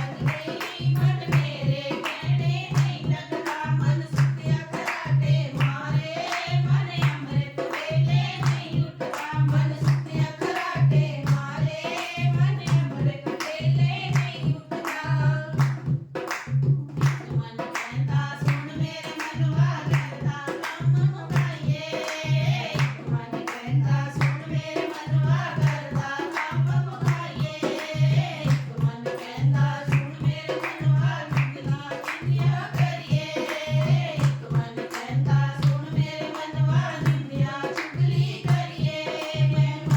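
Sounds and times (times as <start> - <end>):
sharp hand claps: 0.0 - 6.4, 12.0 - 15.0, 15.6 - 18.6, 22.8 - 25.0, 29.9 - 39.9
women singing devotional song: 0.0 - 39.9.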